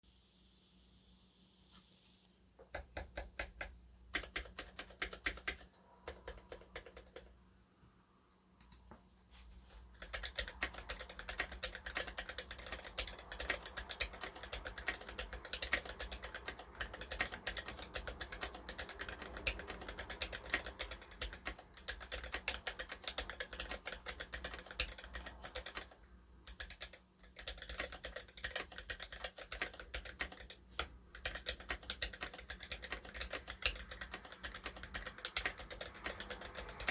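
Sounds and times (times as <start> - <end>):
typing on mechanical keyboard: 2.6 - 7.4, 9.9 - 36.9.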